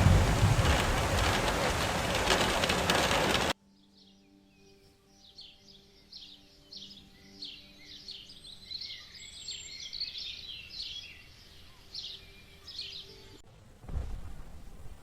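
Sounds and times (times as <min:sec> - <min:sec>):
small birds chirping: 0:00.1 - 0:13.4.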